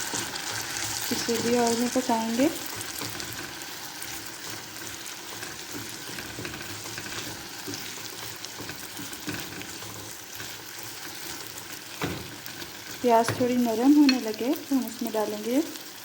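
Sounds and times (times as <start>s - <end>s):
potatoes and onion sizzling in oil: 0.0s - 16.0s
utensil knocking in pan: 11.9s - 14.3s.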